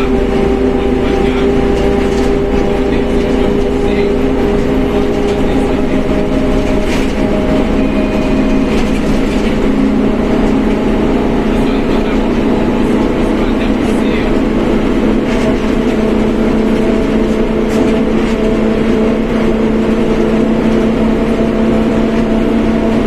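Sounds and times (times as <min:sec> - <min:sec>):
bus engine: 0:00.0 - 0:23.0
bus gear whine: 0:00.0 - 0:23.0
road noise: 0:00.0 - 0:23.0.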